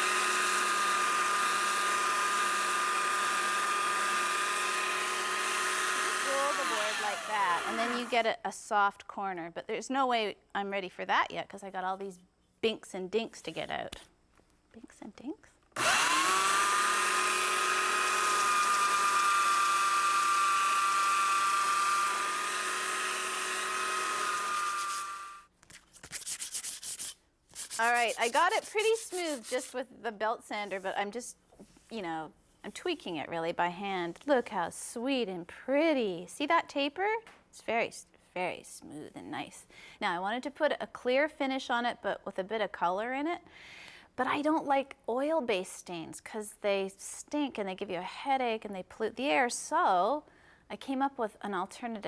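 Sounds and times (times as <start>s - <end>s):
belt sander whining: 0.0s - 8.2s, 15.8s - 25.4s
wood rolled against sanding belt: 0.0s - 8.2s, 15.8s - 25.4s, 27.6s - 29.8s
hand sanding strokes: 24.4s - 25.4s, 26.0s - 29.8s.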